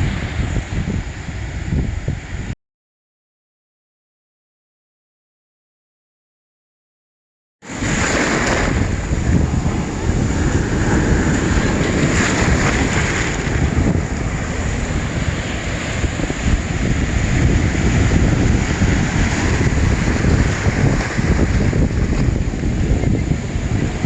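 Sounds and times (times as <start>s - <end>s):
wind buffeting microphone: 0.0s - 2.6s, 7.7s - 24.0s
waves on a pebble beach: 7.7s - 24.0s.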